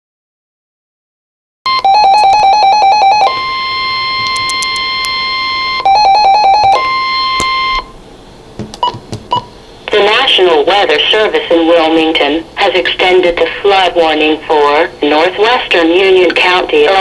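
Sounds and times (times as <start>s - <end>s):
steady single-pitch tone: 1.7s - 8.0s.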